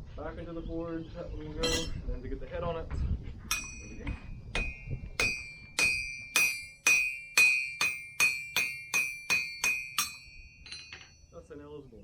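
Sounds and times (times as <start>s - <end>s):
hammer striking hot iron: 1.6s - 2.0s, 3.5s - 11.4s.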